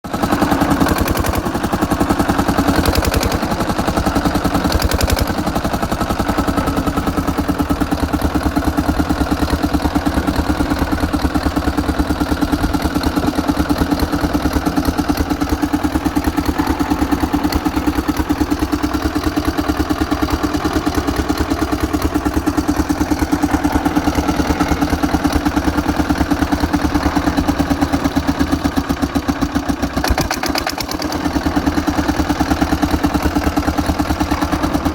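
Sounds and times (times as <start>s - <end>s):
diesel engine clattering: 0.1s - 34.9s
sharp engine knocks: 30.0s - 31.4s.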